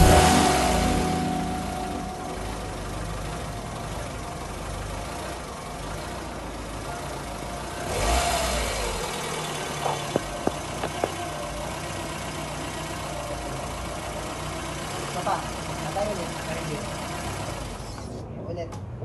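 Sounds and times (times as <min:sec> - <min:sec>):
car engine running unevenly: 0:00.0 - 0:18.2
engine pops: 0:09.5 - 0:11.7.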